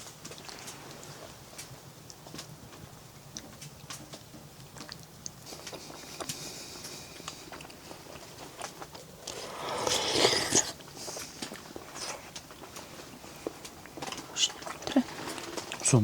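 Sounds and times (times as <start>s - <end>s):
person chewing: 4.6s - 15.8s.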